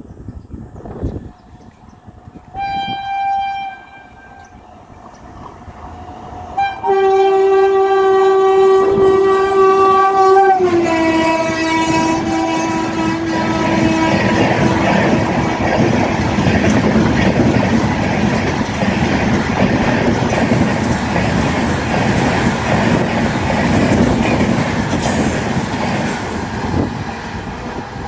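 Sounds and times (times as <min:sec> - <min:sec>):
locomotive twin-tone horn: 0:02.5 - 0:04.5, 0:06.6 - 0:16.7.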